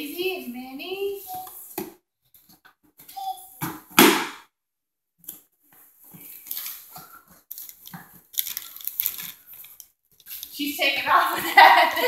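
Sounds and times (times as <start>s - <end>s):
wrapping paper rustling and tearing: 7.4s - 10.6s.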